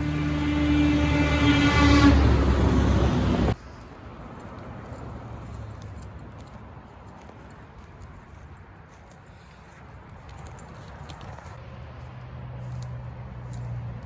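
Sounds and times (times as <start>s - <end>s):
train rumbling past: 0.0s - 3.6s.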